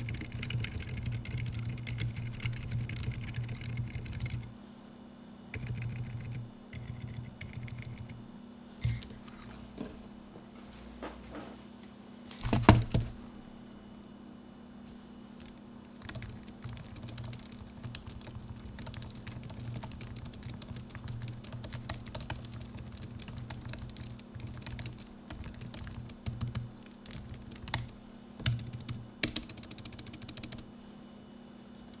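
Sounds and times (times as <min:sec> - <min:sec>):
typing on a keyboard: 0:00.0 - 0:04.5, 0:05.6 - 0:08.2, 0:12.4 - 0:13.1, 0:15.4 - 0:30.7.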